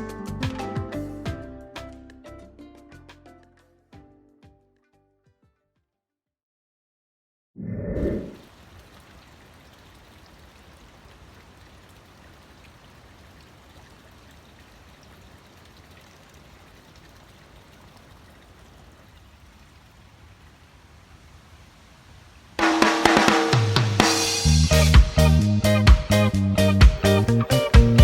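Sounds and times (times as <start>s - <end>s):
river flowing: 8.1s - 24.4s
small water splashes: 8.3s - 23.2s.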